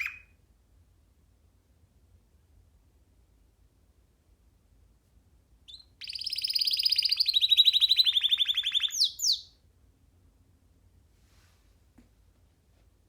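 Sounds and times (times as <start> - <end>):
canary singing: 0.0 - 0.3, 5.7 - 9.6.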